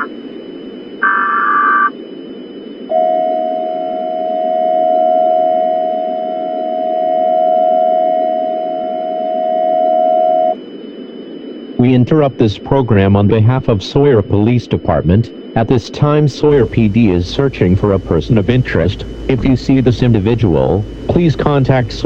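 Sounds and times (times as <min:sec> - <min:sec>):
screechy digital header data: 0:00.0 - 0:02.2, 0:11.6 - 0:22.0
low static hiss: 0:00.0 - 0:22.0.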